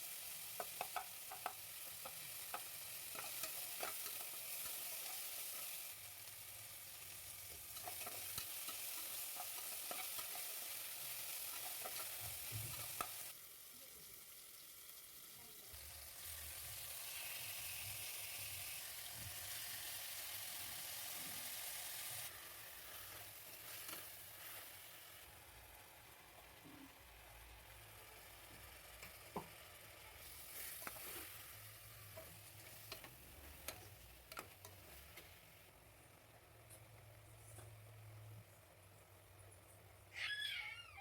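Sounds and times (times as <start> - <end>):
food sizzling in a pan: 0.0 - 38.6
spoon stirring in a pan: 0.2 - 6.2, 7.0 - 13.3, 22.7 - 25.2, 28.1 - 35.5.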